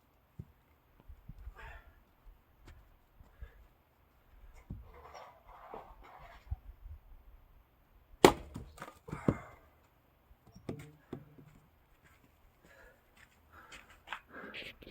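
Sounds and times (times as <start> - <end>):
axe splitting log: 8.2 - 9.6.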